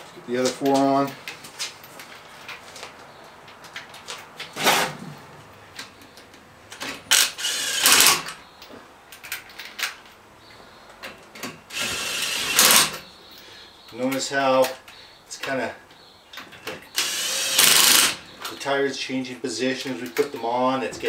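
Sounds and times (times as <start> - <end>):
power tool spinning lug nuts: 7.1 - 8.3, 11.7 - 13.0, 16.9 - 18.2.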